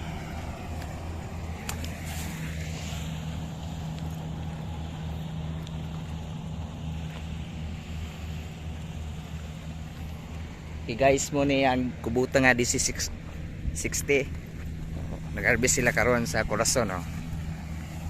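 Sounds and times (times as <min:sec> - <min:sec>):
diesel engine droning: 0:00.0 - 0:18.0.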